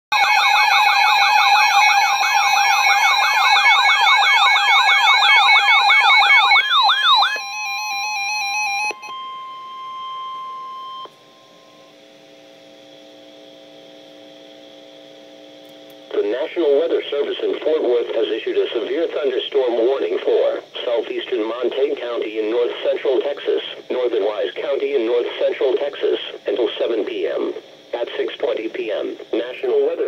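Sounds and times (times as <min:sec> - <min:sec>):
electronic siren sweep: 0:00.1 - 0:12.0
quiet electronic drone: 0:00.9 - 0:30.0.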